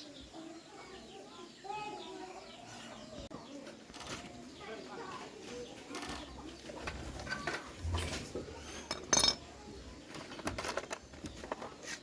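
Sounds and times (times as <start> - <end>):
metal tools clinking: 8.9 - 9.5
ringing metal clink: 9.1 - 9.4.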